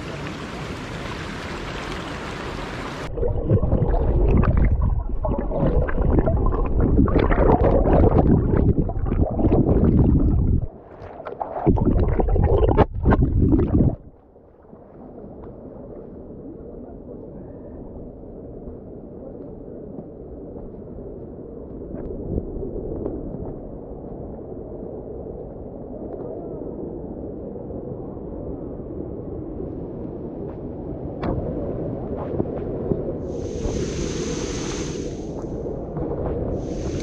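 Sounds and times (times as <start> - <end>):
gurgling stream water: 0.0 - 16.8, 33.2 - 37.0.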